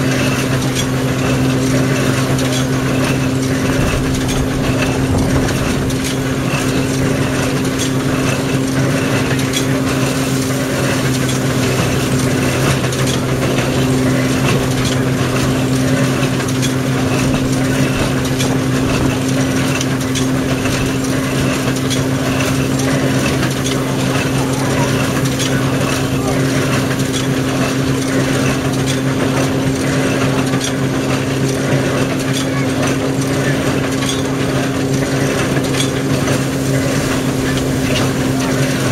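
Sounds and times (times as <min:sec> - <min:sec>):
threshing machine rattling: 0:00.0 - 0:38.9.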